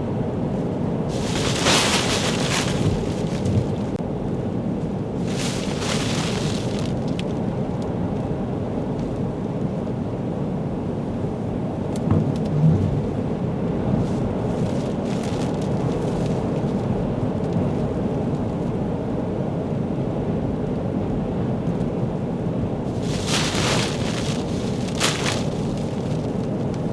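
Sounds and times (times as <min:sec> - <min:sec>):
storm wind: 0:00.9 - 0:07.7, 0:22.7 - 0:26.9
heavy surf: 0:01.1 - 0:04.0, 0:22.9 - 0:26.3
heavy thuds: 0:01.1 - 0:04.0, 0:05.2 - 0:06.8, 0:22.9 - 0:26.4.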